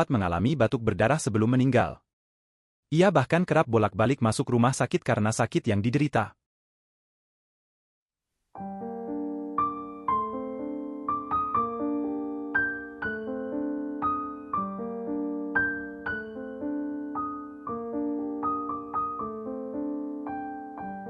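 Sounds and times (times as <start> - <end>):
piano playing gentle chords: 8.6 - 21.0.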